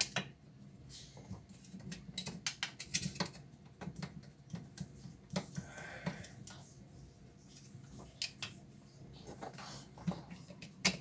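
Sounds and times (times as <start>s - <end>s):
tools clicking and knocking: 1.6s - 5.5s.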